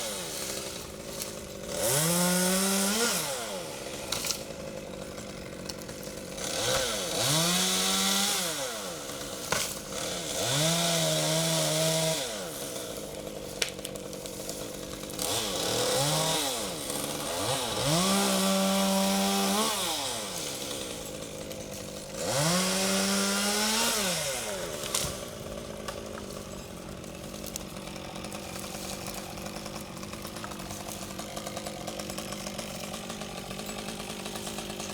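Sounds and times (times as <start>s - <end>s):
chainsaw idling: 0.0s - 34.9s
chainsaw revving and cutting wood: 0.0s - 34.9s.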